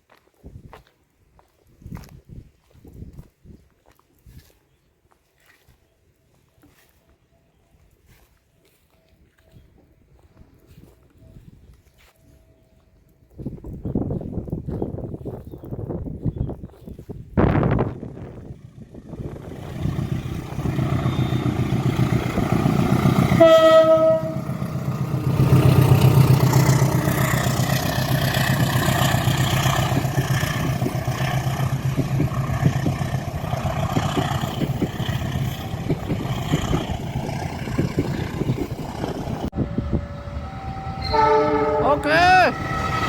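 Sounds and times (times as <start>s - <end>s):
train rumbling: 17.2s - 43.0s
wheels clattering on rails: 19.1s - 39.5s
train horn blast: 22.7s - 27.2s, 39.6s - 43.0s.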